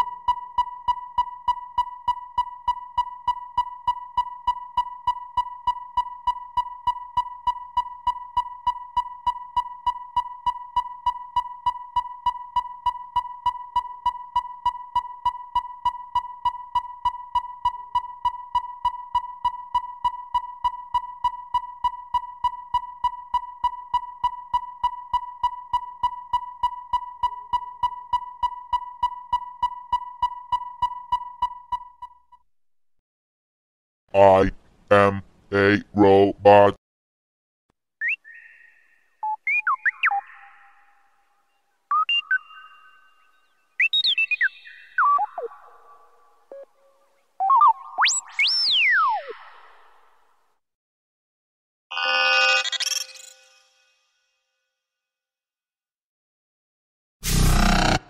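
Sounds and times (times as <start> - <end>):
steady electronic tone: 57.2 - 58.0.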